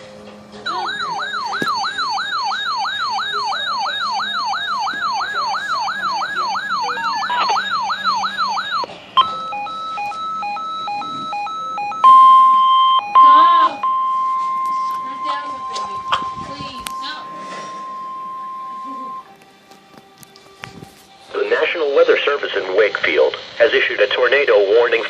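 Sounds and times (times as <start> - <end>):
electronic siren wailing: 0.6 - 19.3
steady emergency alert tone: 0.6 - 19.3
alternating beeping tones: 0.7 - 19.3.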